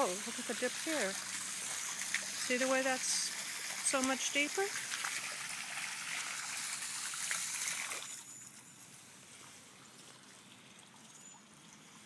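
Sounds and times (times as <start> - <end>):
water spewing from ground: 0.0 - 8.4.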